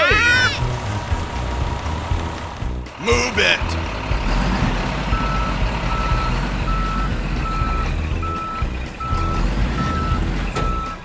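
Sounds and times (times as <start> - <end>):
low engine rumble: 0.2 - 11.0
truck reversing alarm beeping: 3.1 - 11.0.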